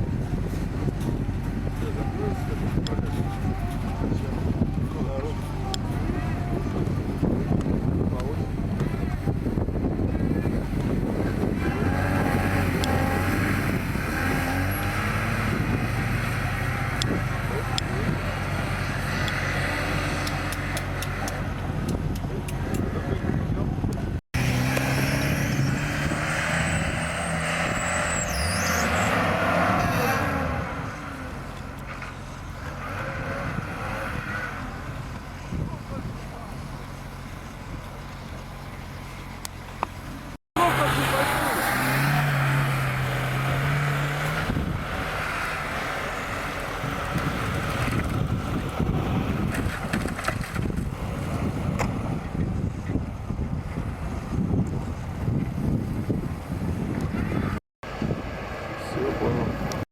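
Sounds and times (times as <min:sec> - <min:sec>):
wind buffeting microphone: 0:00.0 - 0:28.1, 0:41.8 - 0:59.8
off-road vehicle engine running: 0:00.0 - 0:59.8.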